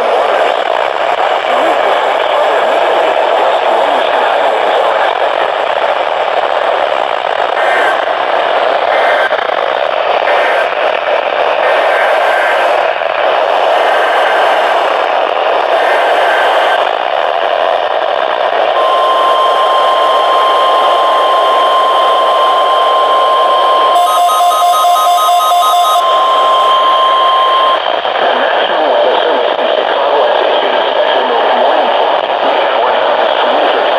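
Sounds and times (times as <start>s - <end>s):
radio static hissing: 0.0s - 33.9s
faint short tones blipping: 18.8s - 27.8s
steady alert tone: 18.8s - 27.9s.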